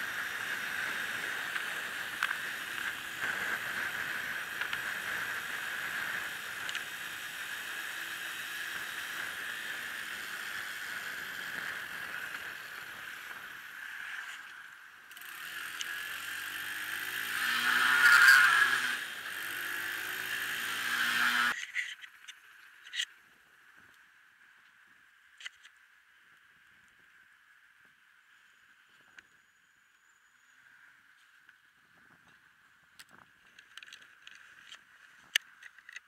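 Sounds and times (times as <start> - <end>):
bicycle high-pitched noise: 15.2 - 21.9.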